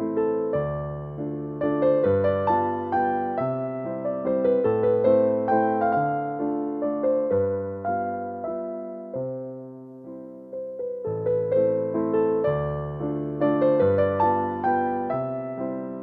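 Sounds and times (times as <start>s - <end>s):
electric piano melody: 0.0s - 16.0s.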